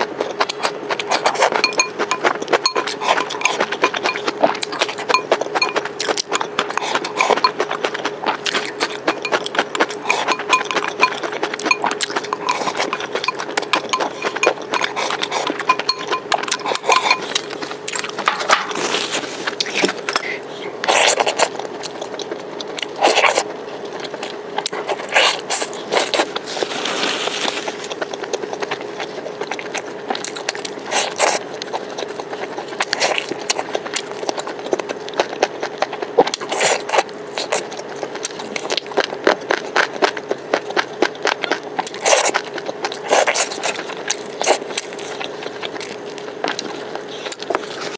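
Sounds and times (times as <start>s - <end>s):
chewing and crunching food: 0.0s - 47.9s
faint steady hum: 0.0s - 47.9s.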